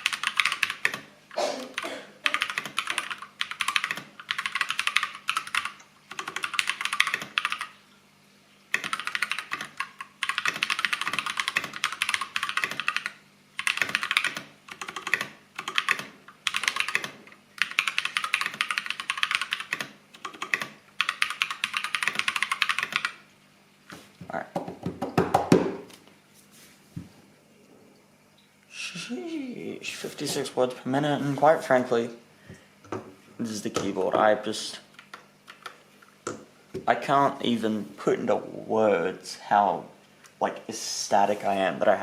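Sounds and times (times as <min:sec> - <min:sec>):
mechanical keyboard typing: 0:00.0 - 0:01.1, 0:02.2 - 0:07.7, 0:08.7 - 0:23.2, 0:35.0 - 0:35.8.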